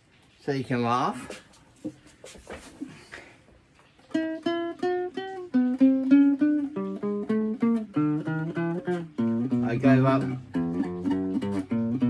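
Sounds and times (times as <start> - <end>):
guitar picked note by note: 4.1 - 12.0.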